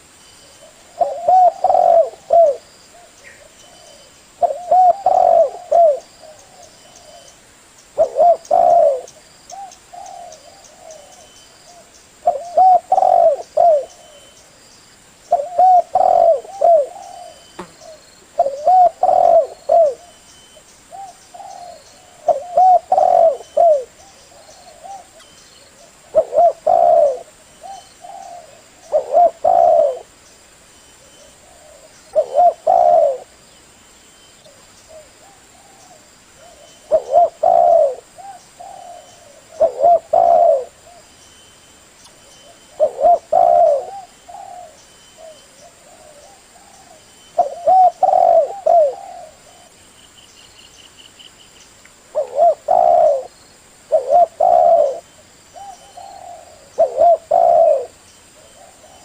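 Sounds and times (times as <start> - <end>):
faint bird chirps: 0.0 - 59.0
dove cooing: 0.6 - 7.3, 8.0 - 14.4, 15.3 - 20.2, 20.9 - 30.1, 31.0 - 33.4, 34.5 - 41.1, 42.4 - 49.8, 52.1 - 59.0.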